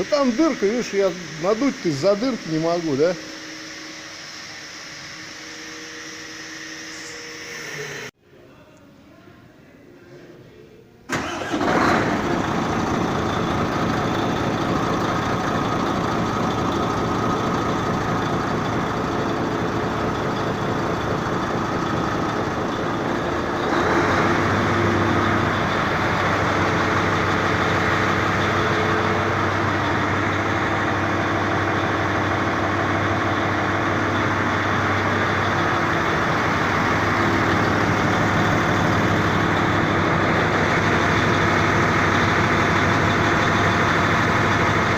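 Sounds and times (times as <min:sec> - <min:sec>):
truck diesel engine idling: 0:00.0 - 0:03.9, 0:11.1 - 0:44.9.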